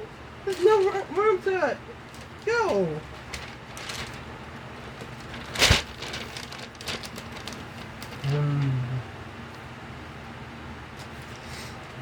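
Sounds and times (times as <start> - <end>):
loud rustle: 3.2 - 8.3
person humming: 8.2 - 9.2.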